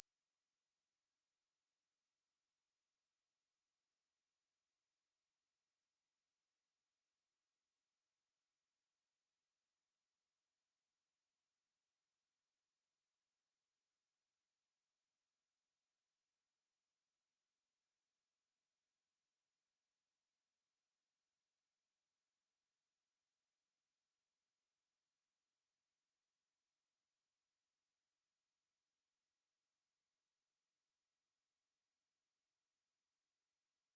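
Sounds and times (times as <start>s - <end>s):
high-pitched sine test tone: 10.9s - 33.9s.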